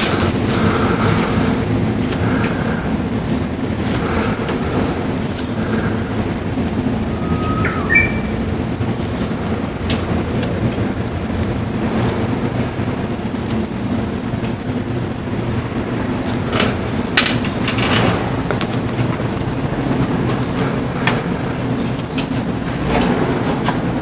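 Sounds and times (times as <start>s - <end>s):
low outdoor rumble: 0.0s - 24.0s
bird song whistled notes: 7.2s - 8.4s.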